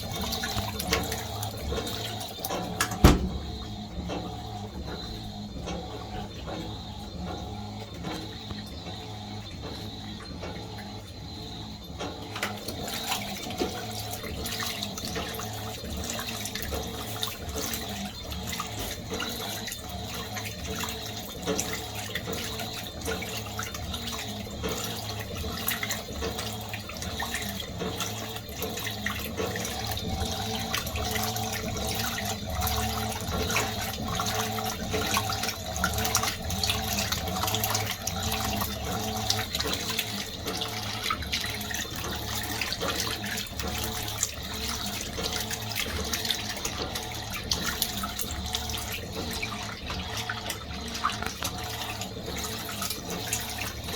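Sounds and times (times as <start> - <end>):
water running into washing machine: 0.0 - 53.9.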